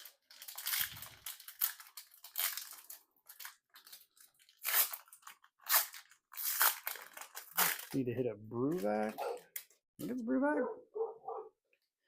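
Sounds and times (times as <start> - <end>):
foil wrapper crinkling and tearing: 0.0 - 8.1.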